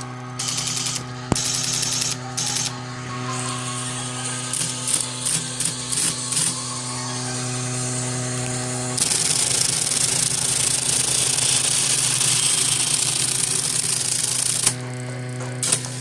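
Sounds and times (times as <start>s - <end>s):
typewriter motor humming: 0.0s - 16.0s
typewriter mechanical rattle: 0.4s - 2.7s, 4.5s - 6.6s, 9.0s - 14.8s, 15.6s - 16.0s.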